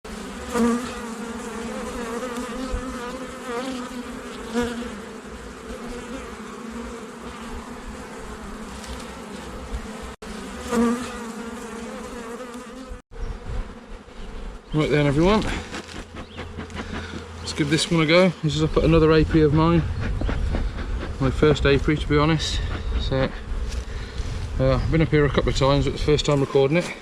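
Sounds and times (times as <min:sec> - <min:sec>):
bees humming at a hive: 0:00.0 - 0:24.4
single bee buzzing past: 0:00.1 - 0:18.5.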